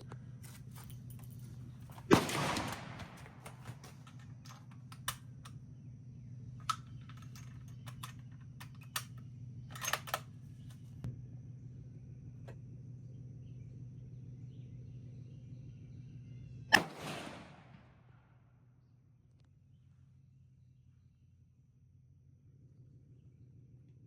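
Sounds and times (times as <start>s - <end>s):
steady low hum: 0.0s - 24.0s
suppressed rifle shot: 2.0s - 4.2s, 16.7s - 18.0s
small clicks: 2.4s - 5.6s, 6.6s - 10.9s.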